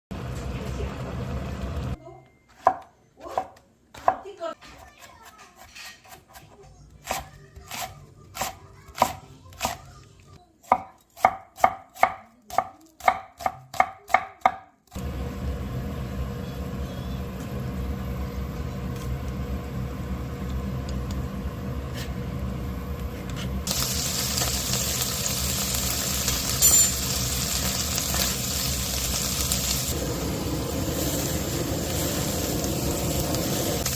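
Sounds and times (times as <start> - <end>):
knife chopping on cutting board: 10.6 - 14.7
cooking hiss: 23.6 - 33.9.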